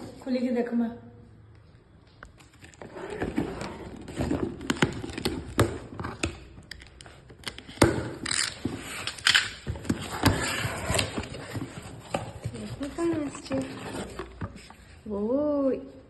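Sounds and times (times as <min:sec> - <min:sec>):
packaging rustling and crinkling: 0:02.3 - 0:15.0.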